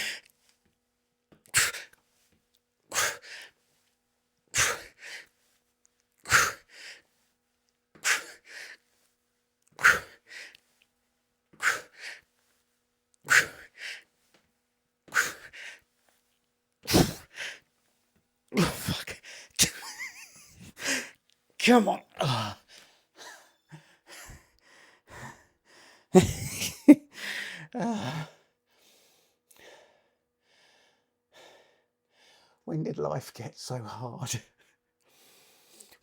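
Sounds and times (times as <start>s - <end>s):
man breathing hard: 2.9s - 3.7s, 4.6s - 5.4s, 6.2s - 7.2s, 8.0s - 9.0s, 9.8s - 10.6s, 11.6s - 12.3s, 13.3s - 14.2s, 15.1s - 15.8s, 16.9s - 17.7s, 18.6s - 19.7s, 20.6s - 21.2s, 22.2s - 32.6s, 35.1s - 36.0s.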